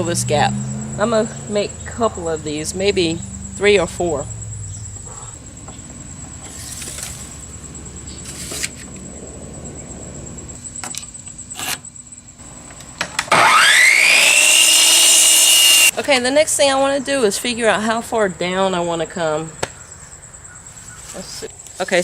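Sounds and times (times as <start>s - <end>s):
electric power saw motor whine: 12.4s - 15.9s.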